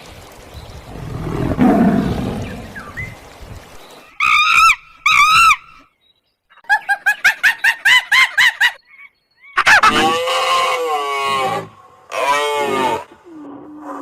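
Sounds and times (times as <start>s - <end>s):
loud animal call: 9.6s - 13.2s.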